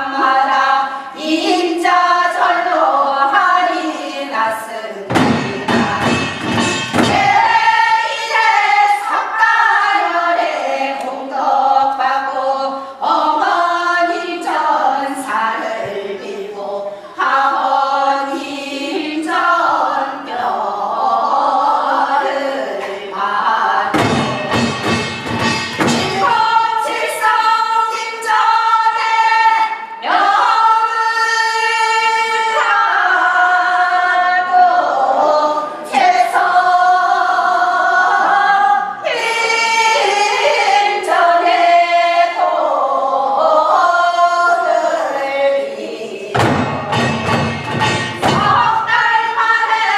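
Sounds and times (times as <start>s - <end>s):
group singing folk song in unison: 0.0s - 49.9s
sharp strikes: 5.1s - 7.7s, 24.0s - 26.5s, 46.4s - 49.0s.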